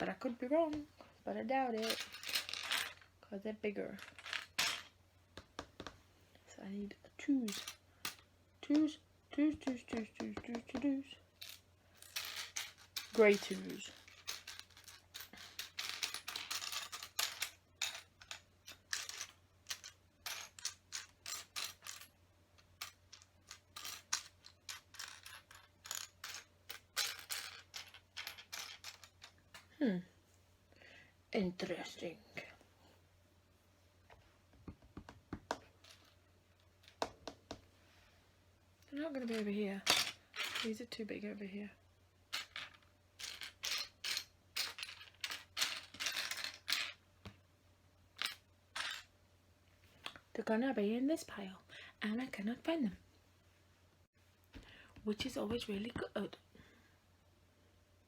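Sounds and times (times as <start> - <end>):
plastic pieces clicking and rattling: 9.6 - 29.7, 42.3 - 47.0
plastic toy bricks clattering: 9.6 - 29.7, 42.3 - 47.0.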